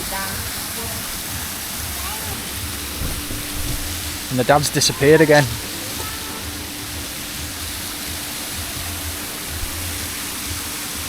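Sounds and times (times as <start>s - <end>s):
heavy rain hissing: 0.0s - 11.0s.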